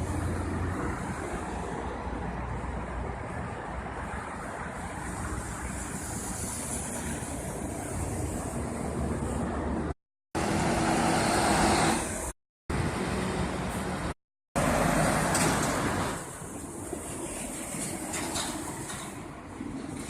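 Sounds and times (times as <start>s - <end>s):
truck passing: 0.0s - 18.9s
highway traffic noise: 0.0s - 20.0s.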